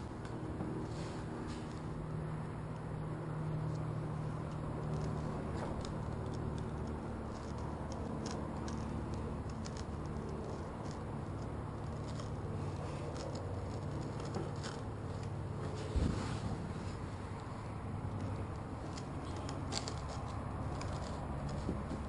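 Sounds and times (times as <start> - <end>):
steady low hum: 0.0 - 22.0
thump: 15.9 - 16.4.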